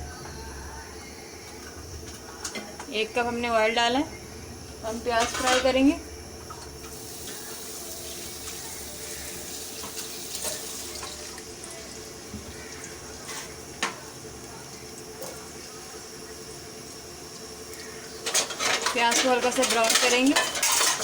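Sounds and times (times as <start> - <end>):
onions sizzling in oil: 4.7 - 21.0.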